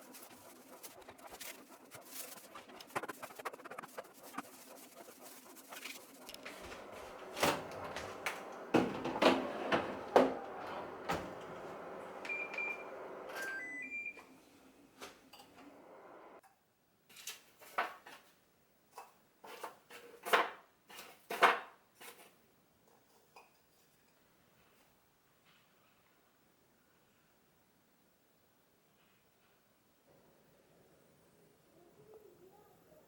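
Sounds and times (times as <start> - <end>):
kitchen clatter knocks and clicks: 6.4 - 13.3
appliance electronic beeps: 6.6 - 14.5.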